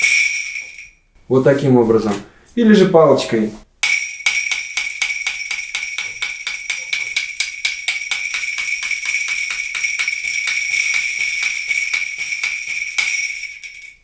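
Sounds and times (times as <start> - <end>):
drumstick striking tambourine: 0.0 - 0.9, 3.8 - 14.0
tambourine bells jingling: 0.0 - 1.1, 3.8 - 14.0.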